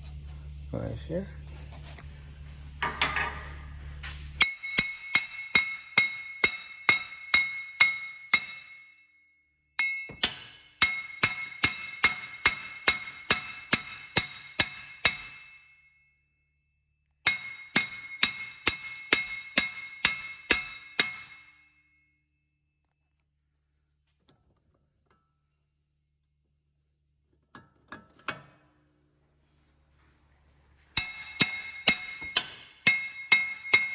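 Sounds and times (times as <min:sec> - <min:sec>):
hammer striking steel nut: 0:04.4 - 0:09.0, 0:09.8 - 0:15.7, 0:17.3 - 0:21.7, 0:30.9 - 0:33.9.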